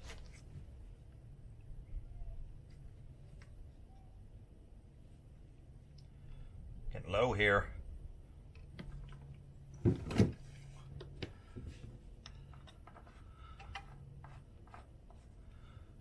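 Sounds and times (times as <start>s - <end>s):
steady low hum: 0.0s - 16.0s
small clicks and knocks of handling: 10.9s - 15.2s.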